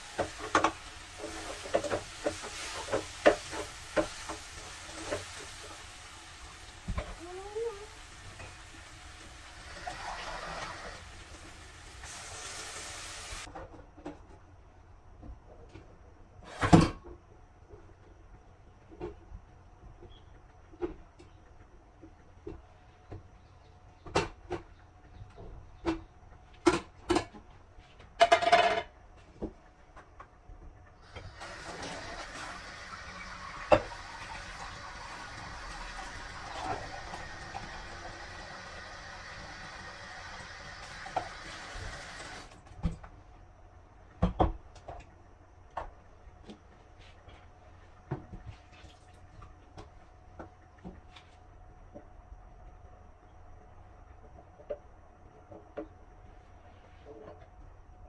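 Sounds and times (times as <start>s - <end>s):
knocks of cupboards and dishes: 44.2s - 45.0s.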